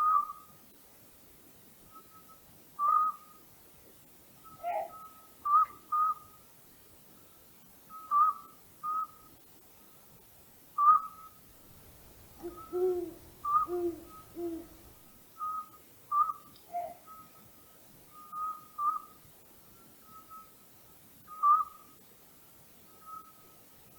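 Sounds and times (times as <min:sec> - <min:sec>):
deep owl hoots: 0:10.8 - 0:17.0
owl whistled notes: 0:12.4 - 0:17.2, 0:18.2 - 0:19.1, 0:21.3 - 0:21.8.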